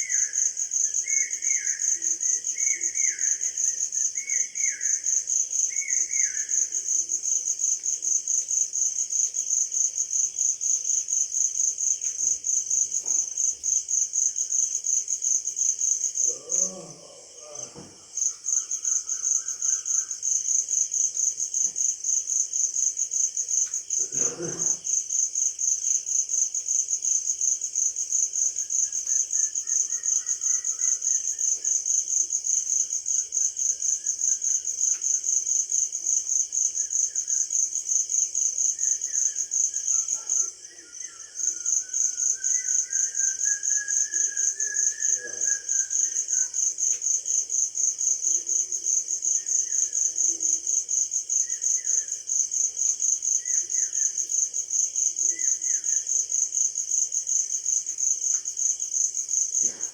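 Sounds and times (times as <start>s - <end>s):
crickets chirping: 0.0s - 59.9s
faint bird calls: 42.0s - 46.5s.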